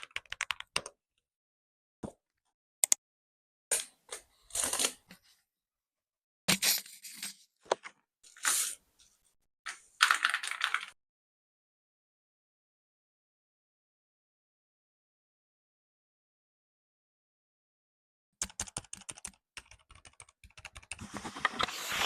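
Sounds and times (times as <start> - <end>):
mechanical keyboard typing: 0.0 - 1.0, 10.0 - 11.0, 18.4 - 21.7.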